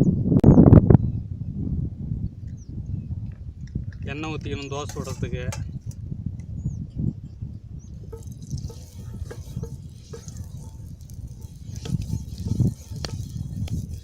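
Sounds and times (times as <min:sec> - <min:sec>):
oil spitting on hot griddle: 0:04.8 - 0:06.0, 0:07.9 - 0:14.0.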